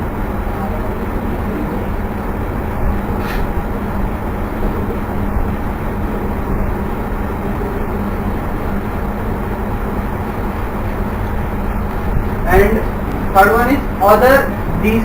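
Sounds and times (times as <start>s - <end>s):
low constant hum: 0.0s - 15.0s.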